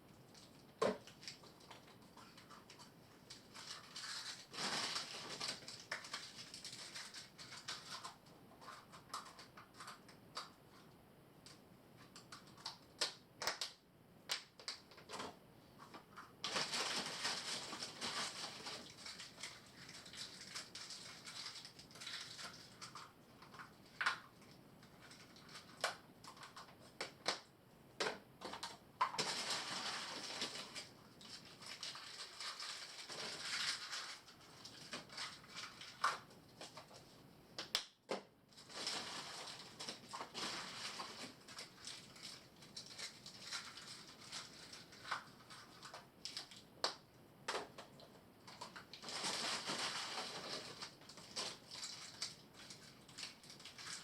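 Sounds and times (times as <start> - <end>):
clicks and crackles: 0.0 - 54.0
rustling: 15.8 - 26.7, 29.0 - 37.3, 48.5 - 54.0.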